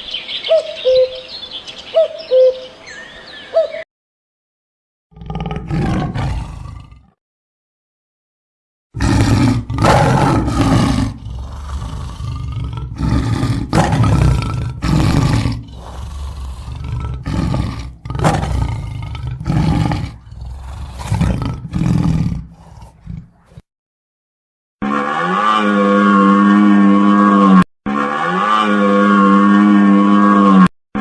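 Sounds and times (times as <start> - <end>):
big cat roaring: 5.1 - 7.2, 9.0 - 23.6, 24.8 - 30.7.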